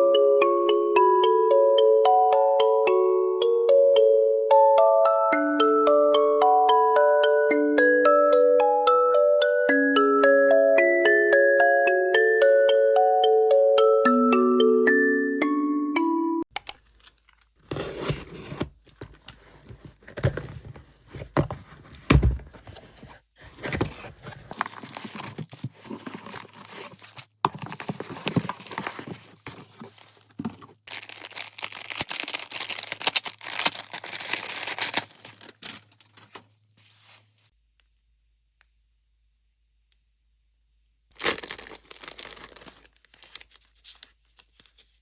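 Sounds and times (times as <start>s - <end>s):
packaging tearing and crinkling: 24.5s - 36.5s, 41.1s - 44.8s.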